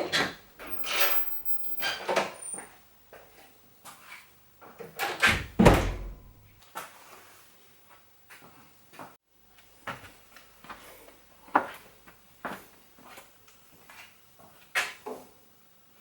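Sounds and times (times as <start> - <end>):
knocks and clunks: 5.2 - 6.5.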